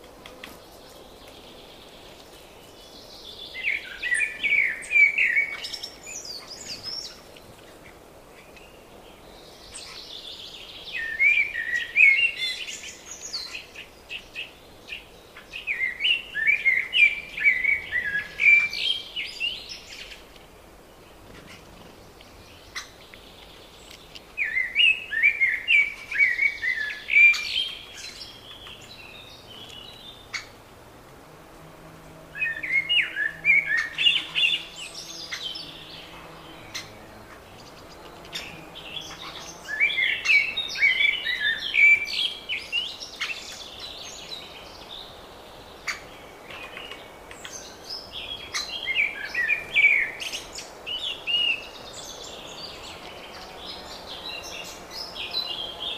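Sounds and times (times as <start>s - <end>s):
other birds chipping and calling: 0.0s - 30.7s, 31.5s - 55.9s
songbird warbling song: 0.0s - 30.7s, 31.5s - 55.9s.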